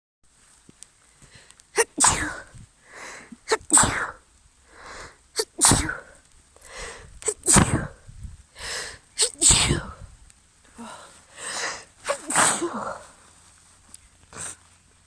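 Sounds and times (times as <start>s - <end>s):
breath in: 1.2s - 8.0s, 8.6s - 10.1s, 10.7s - 13.1s
woman sneezing: 1.8s - 2.5s, 3.4s - 4.2s, 5.4s - 6.1s, 7.3s - 8.0s, 9.2s - 10.0s, 11.6s - 13.1s.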